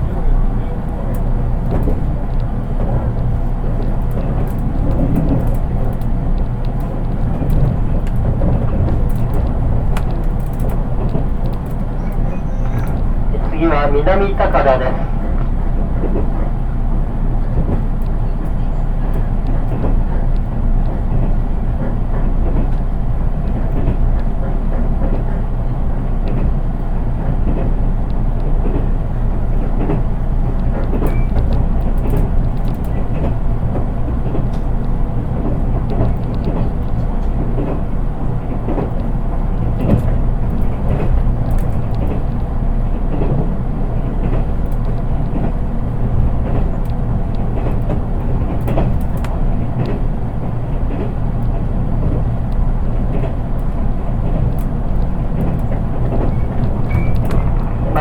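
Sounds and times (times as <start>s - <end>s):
train wheels rumbling on rails: 0.0s - 58.0s
track clicks: 0.1s - 16.9s.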